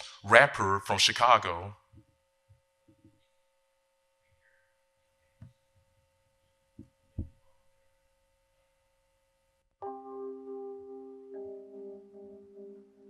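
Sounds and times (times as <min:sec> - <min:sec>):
steady electrical hum: 0:00.0 - 0:09.7
soft low thumps: 0:06.8 - 0:07.4.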